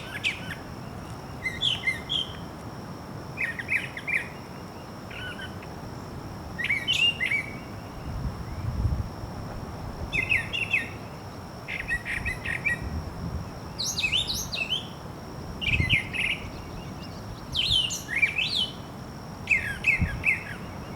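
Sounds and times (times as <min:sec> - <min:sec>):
songbird singing: 0:00.0 - 0:02.5, 0:03.4 - 0:08.9, 0:10.1 - 0:20.9.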